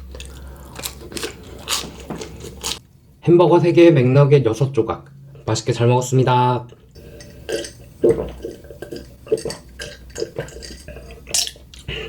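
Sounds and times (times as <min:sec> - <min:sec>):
person chewing with wet mouth sounds: 0:00.0 - 0:02.8, 0:06.7 - 0:12.0.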